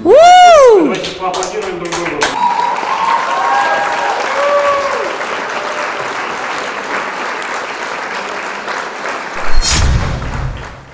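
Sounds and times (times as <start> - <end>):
audience applauding: 1.3 - 10.9
loud thump: 9.4 - 10.9.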